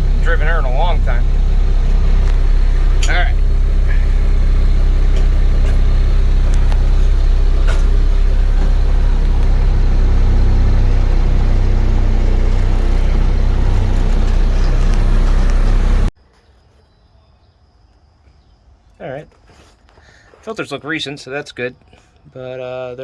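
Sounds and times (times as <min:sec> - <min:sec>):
large vehicle engine idling: 0:00.0 - 0:16.1.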